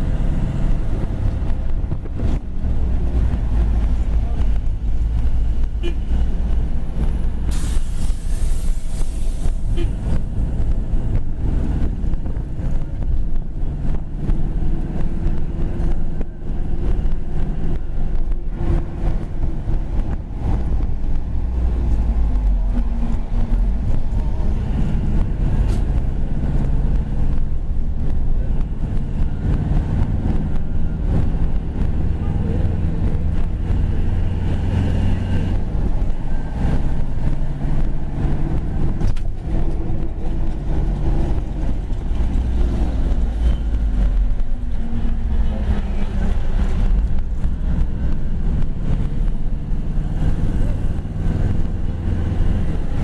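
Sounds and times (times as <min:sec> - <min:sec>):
road traffic rumble: 0:00.0 - 0:53.0
wind buffeting microphone: 0:00.0 - 0:53.0
air brake hiss: 0:07.5 - 0:09.8.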